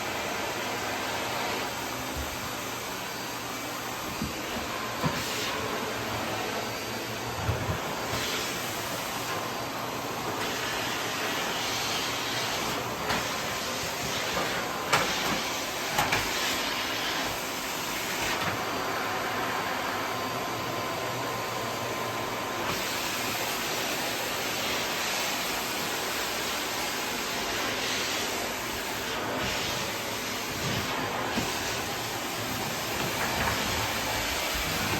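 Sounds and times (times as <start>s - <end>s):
vacuum cleaner running: 0.0s - 34.9s.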